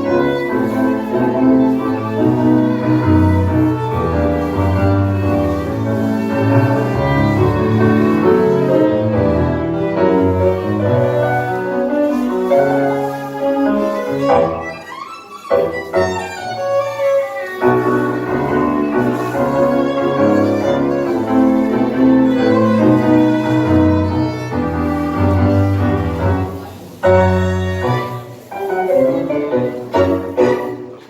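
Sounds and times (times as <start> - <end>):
bass: 0.0 - 12.1, 17.7 - 26.5
bowed strings: 0.0 - 26.7
piano: 0.0 - 31.0
tango ensemble playing: 0.0 - 31.0.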